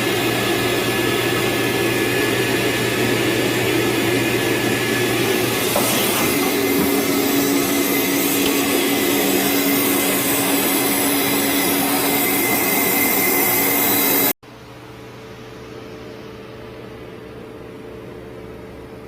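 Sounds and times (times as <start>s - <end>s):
rushing machine noise: 4.0s - 14.4s
quiet mechanical hum: 14.5s - 19.0s.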